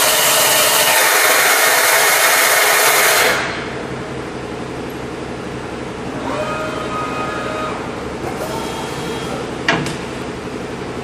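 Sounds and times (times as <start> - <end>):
machine steady hum: 0.0 - 11.0
machine drives whining: 5.8 - 10.6.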